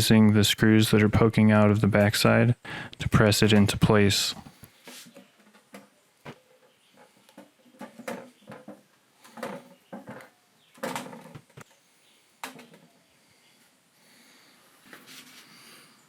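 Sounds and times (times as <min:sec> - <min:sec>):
wood knocking and scraping on wood: 0:03.5 - 0:11.7.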